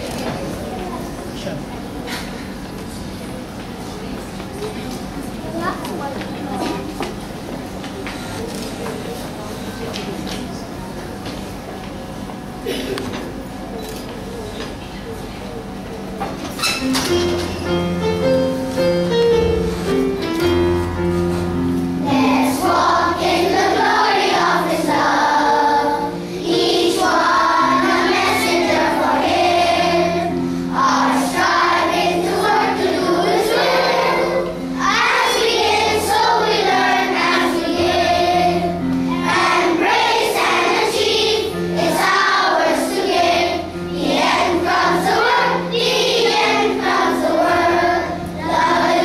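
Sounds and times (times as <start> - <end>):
children's choir singing: 16.2 - 49.0
instrumental accompaniment: 16.6 - 49.0.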